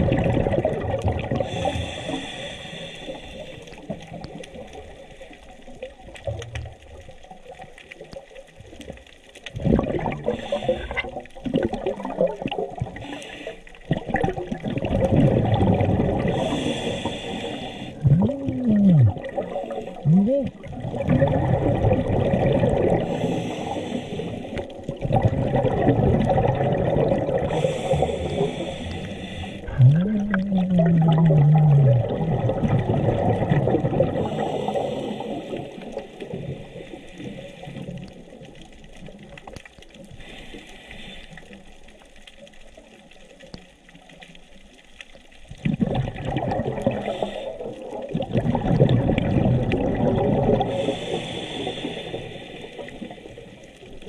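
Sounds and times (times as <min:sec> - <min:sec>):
exhaled bubbles rumbling: 0:00.0 - 0:40.4, 0:41.5 - 0:54.0
regulator inhale hiss: 0:01.4 - 0:04.0, 0:10.2 - 0:11.1, 0:13.0 - 0:13.9, 0:16.3 - 0:18.0, 0:19.4 - 0:20.1, 0:23.0 - 0:24.7, 0:27.5 - 0:29.7, 0:34.2 - 0:38.4, 0:40.1 - 0:42.0, 0:46.9 - 0:47.9, 0:50.6 - 0:53.7.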